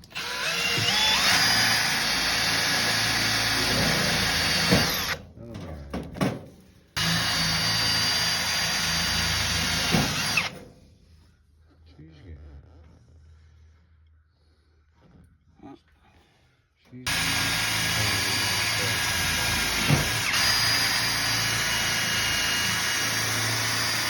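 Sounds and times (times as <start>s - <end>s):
electric drill whining: 0.0s - 5.2s, 7.0s - 10.6s, 17.1s - 24.0s.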